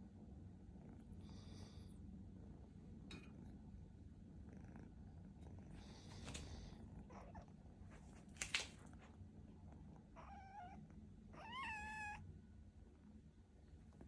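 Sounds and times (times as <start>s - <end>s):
kitten meowing: 11.4s - 12.2s.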